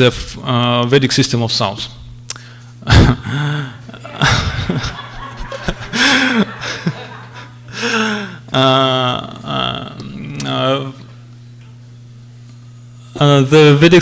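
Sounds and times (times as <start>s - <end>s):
steady low hum: 0.0s - 14.0s
people laughing: 2.9s - 8.3s.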